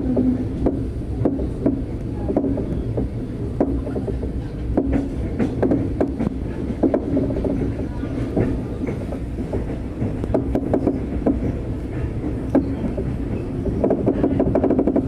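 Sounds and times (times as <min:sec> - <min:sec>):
train wheels rumbling on rail: 0:00.0 - 0:15.0
wheels clicking over rail joints: 0:00.0 - 0:15.0.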